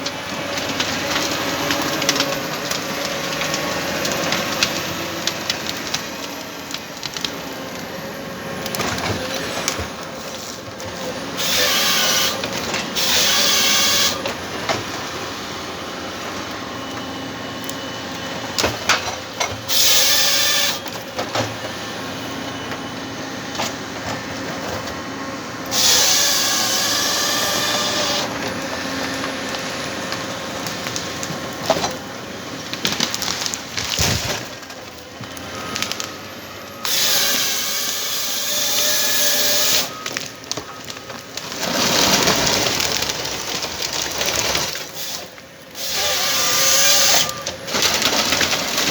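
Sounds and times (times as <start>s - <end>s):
forest harvester running: 0.0s - 48.9s
harvester head sawing stems: 10.2s - 14.2s, 41.4s - 48.9s.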